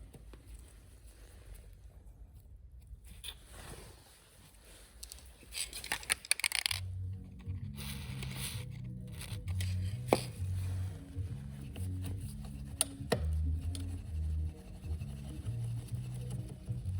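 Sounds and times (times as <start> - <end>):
background music with bass line: 6.7 - 16.9.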